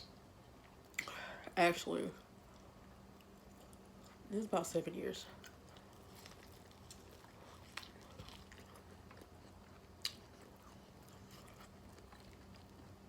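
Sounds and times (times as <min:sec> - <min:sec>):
faint chewing of food: 0:02.2 - 0:04.3, 0:05.2 - 0:13.0.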